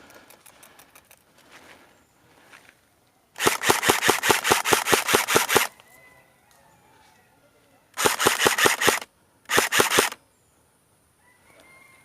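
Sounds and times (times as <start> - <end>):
airsoft gun firing rapid shots: 3.4 - 5.7, 8.0 - 10.2.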